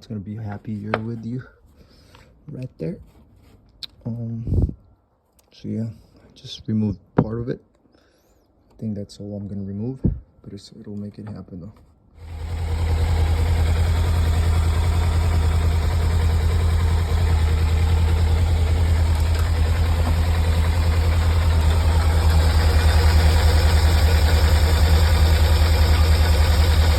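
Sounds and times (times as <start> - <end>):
motorcycle engine idling: 12.2 - 26.9.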